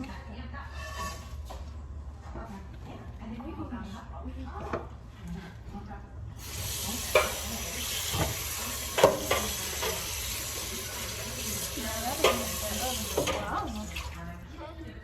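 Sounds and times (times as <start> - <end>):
food sizzling in a frying pan: 6.4 - 14.3
utensil knocking against pan: 7.1 - 10.1, 12.1 - 13.5.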